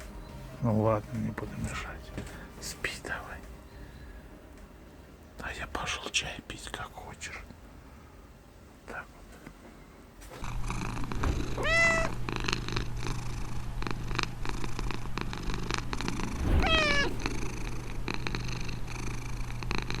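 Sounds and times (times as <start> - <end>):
cat purring: 10.4 - 20.0
cat short rising calls: 16.4 - 17.4.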